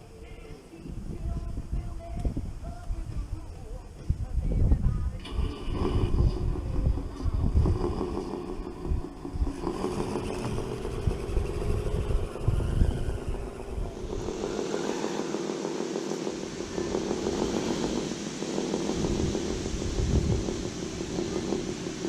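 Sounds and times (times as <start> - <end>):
wind buffeting microphone: 0.8 - 22.0
small electric motor whine: 5.2 - 22.0.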